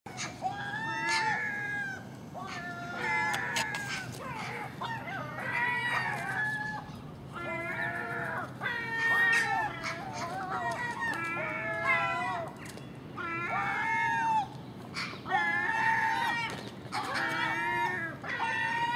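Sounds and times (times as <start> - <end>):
gulls calling: 0.1 - 18.9.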